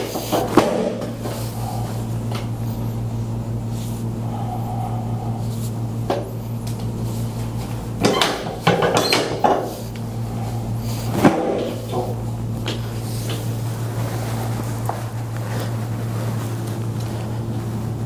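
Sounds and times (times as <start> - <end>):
knocks and rustling clatter: 0.0 - 1.5, 6.0 - 10.0, 11.0 - 18.0
steady low hum: 0.0 - 18.0.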